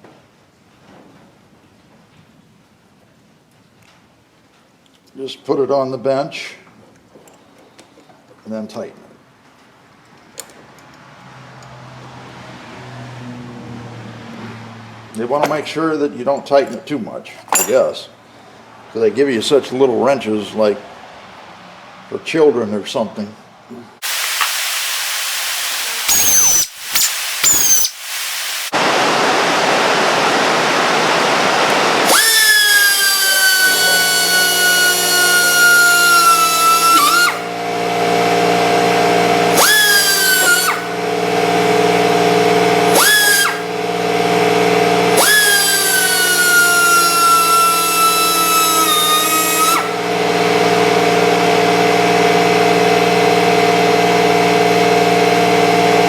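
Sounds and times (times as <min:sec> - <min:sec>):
air hiss blasts: 0:24.0 - 0:28.9, 0:39.5 - 0:40.9
air grinder spinning whine: 0:24.0 - 0:56.0
steady machine hum: 0:24.0 - 0:56.0.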